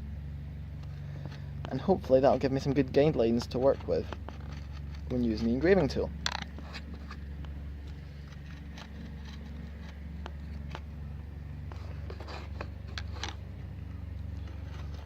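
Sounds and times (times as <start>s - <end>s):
steady low hum: 0.0s - 15.0s
hand tools scraping wood: 1.0s - 7.3s, 11.6s - 13.4s, 14.4s - 15.0s.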